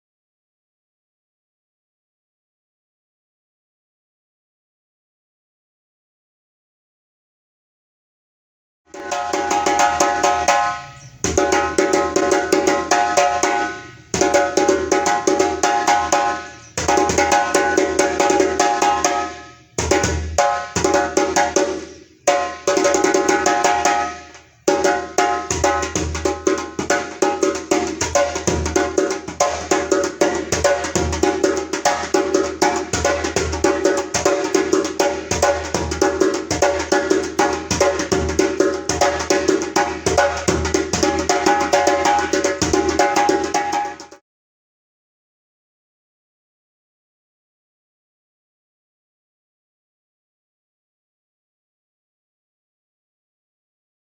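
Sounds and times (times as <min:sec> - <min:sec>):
djembe played by hand: 0:08.9 - 0:44.2.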